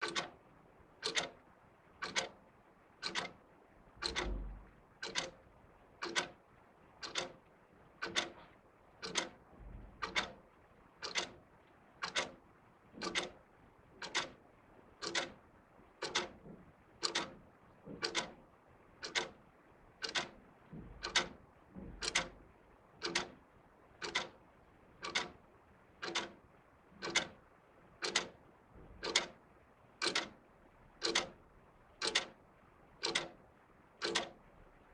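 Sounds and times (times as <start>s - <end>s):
wall clocks ticking: 0.0s - 0.4s, 1.0s - 1.4s, 2.0s - 2.4s, 3.0s - 3.4s, 4.0s - 4.4s, 5.0s - 5.4s, 6.0s - 6.4s, 7.0s - 7.4s, 8.0s - 9.4s, 10.0s - 10.4s, 11.0s - 11.4s, 12.0s - 12.4s, 13.0s - 14.4s, 15.0s - 15.4s, 16.0s - 16.4s, 17.0s - 18.4s, 19.0s - 19.4s, 20.0s - 22.4s, 23.0s - 23.4s, 24.0s - 24.4s, 25.0s - 25.4s, 26.0s - 26.4s, 27.0s - 28.4s, 29.0s - 29.4s, 30.0s - 30.4s, 31.0s - 31.4s, 32.0s - 32.4s, 33.0s - 34.5s.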